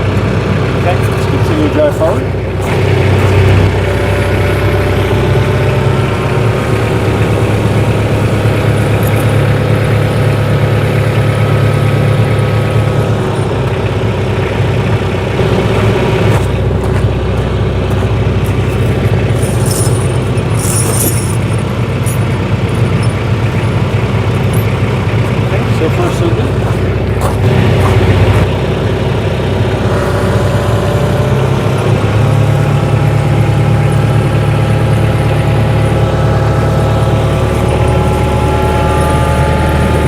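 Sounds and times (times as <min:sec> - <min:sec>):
tractor engine running: 0:00.0 - 0:40.0
light metallic jingle: 0:18.5 - 0:25.0.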